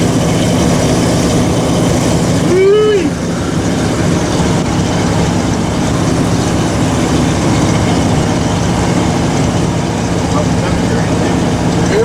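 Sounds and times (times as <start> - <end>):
engine running under load: 0.0 - 12.0
road noise: 0.0 - 12.0.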